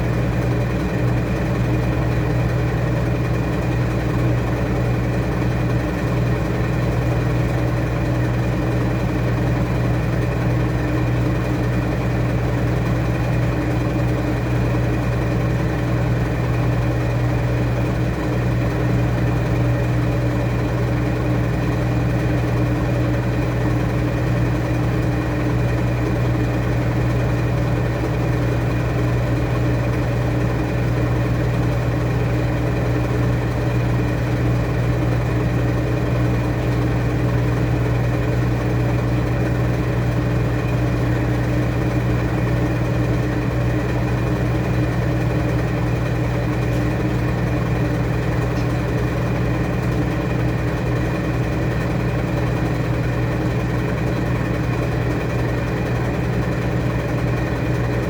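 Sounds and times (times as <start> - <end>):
washing machine humming: 0.0 - 58.0.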